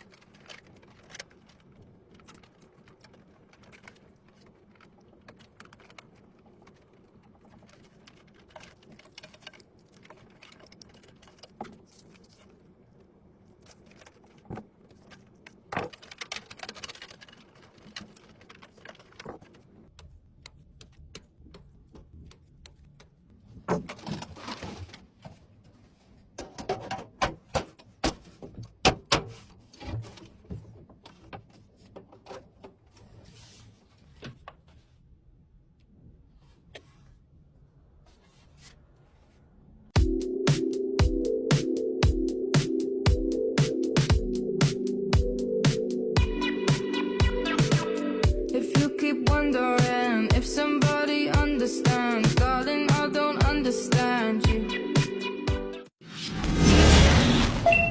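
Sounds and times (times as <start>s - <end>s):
computer hardware clicks and rattles: 0.0s - 23.3s.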